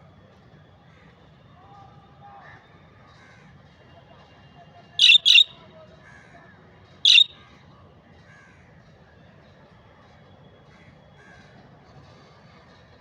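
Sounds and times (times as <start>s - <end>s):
budgerigar squawks: 5.0s - 5.5s, 7.1s - 7.3s
soft bird chatter: 5.0s - 5.5s, 7.1s - 7.3s.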